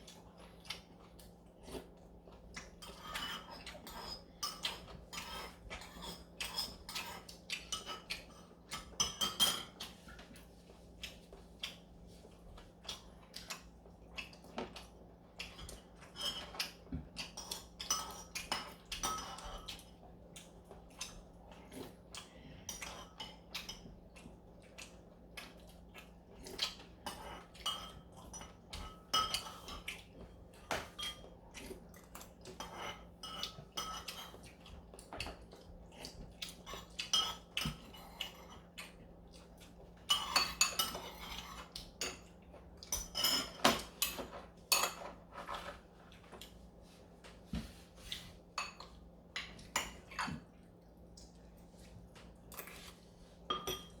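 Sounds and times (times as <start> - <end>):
cutlery clinking against bowls: 2.6 - 10.3, 14.2 - 21.2, 26.5 - 38.7, 40.0 - 45.8, 48.6 - 50.6, 52.5 - 54.0.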